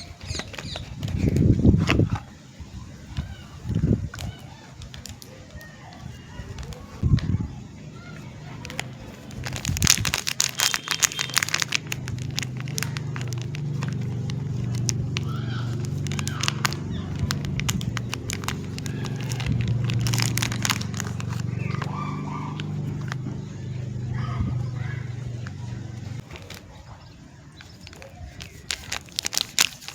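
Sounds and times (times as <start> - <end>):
wrapper crinkling and tearing: 0.0 - 2.2, 8.4 - 23.2, 26.2 - 27.0, 27.6 - 29.9
steady low hum: 11.9 - 26.3.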